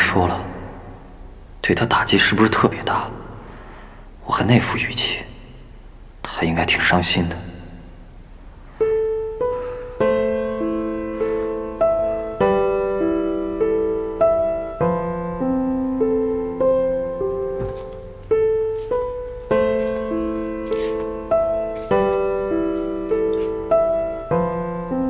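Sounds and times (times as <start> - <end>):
slow gentle solo piano: 7.6 - 25.0.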